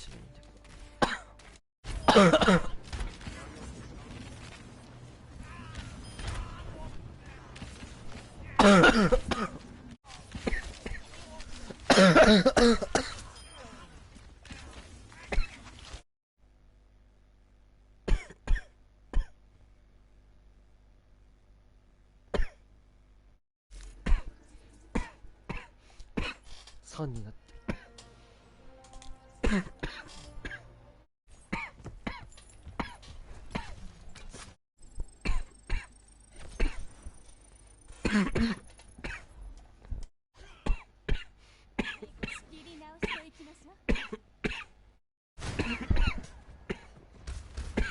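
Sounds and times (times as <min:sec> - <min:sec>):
person coughing: 0:01.0 - 0:01.4, 0:02.0 - 0:02.8, 0:08.5 - 0:09.6, 0:10.3 - 0:13.8, 0:18.1 - 0:19.4, 0:24.0 - 0:26.4, 0:27.7 - 0:28.0, 0:29.4 - 0:30.7, 0:35.2 - 0:37.0, 0:38.0 - 0:39.3, 0:40.4 - 0:44.7, 0:45.5 - 0:47.0.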